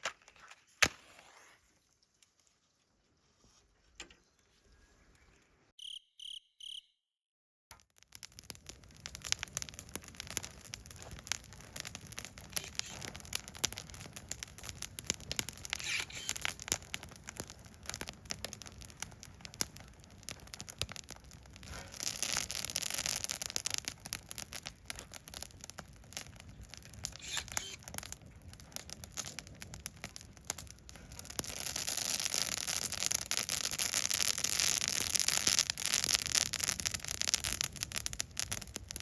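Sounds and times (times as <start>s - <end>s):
sharp pops: 7.7s - 19.0s, 26.5s - 28.0s
wood fire crackling: 7.7s - 39.0s.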